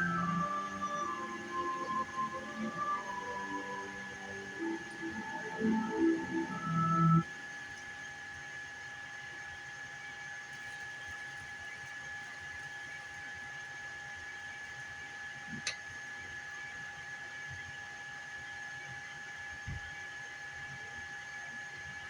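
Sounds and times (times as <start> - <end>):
fan whirring: 0.0 - 7.2
high whine: 0.0 - 7.3.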